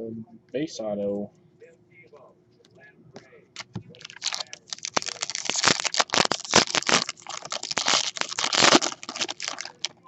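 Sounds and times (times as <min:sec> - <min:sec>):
foil wrapper crinkling and tearing: 0:03.6 - 0:10.0.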